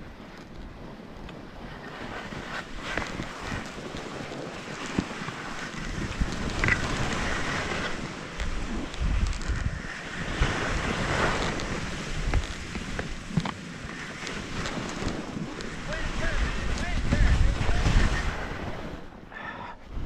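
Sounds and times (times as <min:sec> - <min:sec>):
skis scraping over snow: 0:00.0 - 0:19.1
wind buffeting microphone: 0:00.0 - 0:20.0.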